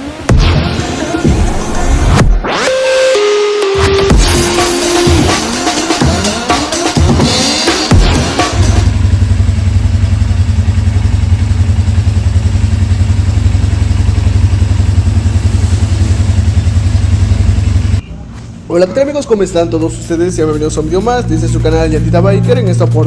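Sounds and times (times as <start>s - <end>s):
background music: 0.0s - 9.1s
motorcycle engine idling: 7.9s - 18.1s.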